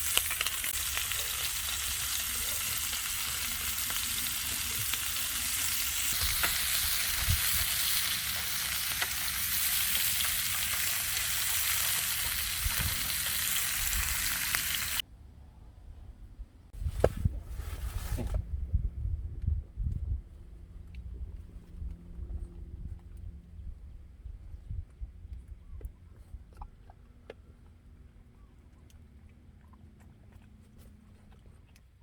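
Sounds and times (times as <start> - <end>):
food sizzling in a pan: 0.0 - 15.0.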